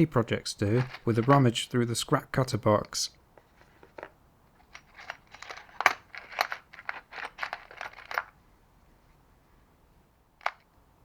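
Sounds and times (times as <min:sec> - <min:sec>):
metal scraps clinking: 0:00.6 - 0:01.6.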